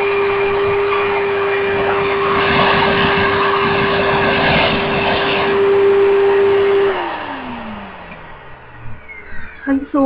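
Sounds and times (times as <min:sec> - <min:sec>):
air rushing through hose: 0:00.0 - 0:09.1
vacuum cleaner motor whine: 0:00.0 - 0:10.0.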